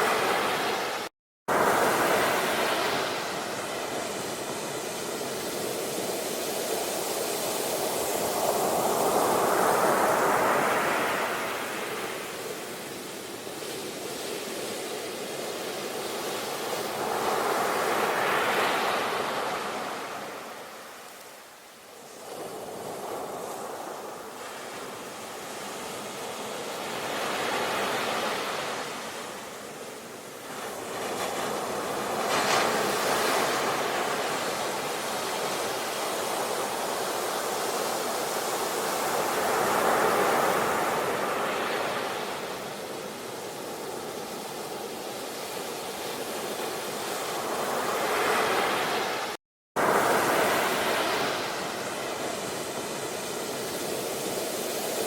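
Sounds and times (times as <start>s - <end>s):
sea waves washing onto shore: 0.0s - 55.0s.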